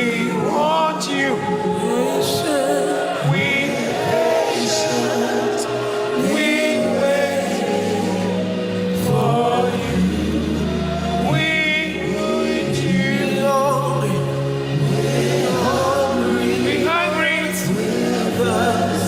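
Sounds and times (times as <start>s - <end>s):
bass and keyboard chords: 0.0s - 19.0s
group of voices singing: 0.0s - 19.0s.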